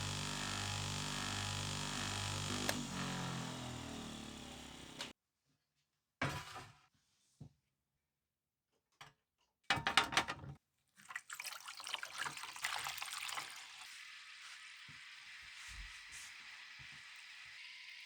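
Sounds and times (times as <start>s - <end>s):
liquid being poured: 11.0s - 18.0s
fizzing sizzling hiss: 12.0s - 18.0s.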